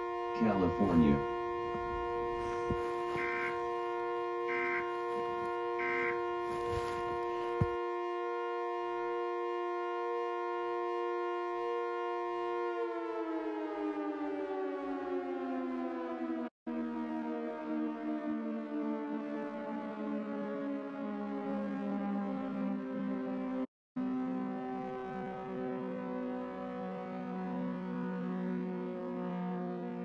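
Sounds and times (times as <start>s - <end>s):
siren-like chord of steady tones: 0.0s - 30.0s
data bursts: 3.2s - 3.6s, 4.5s - 4.9s, 5.8s - 6.2s.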